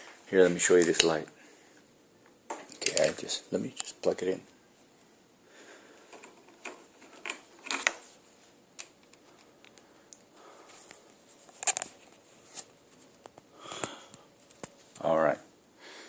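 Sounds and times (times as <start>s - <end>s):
plug and cable clicks and rustles: 8.8s - 12.0s.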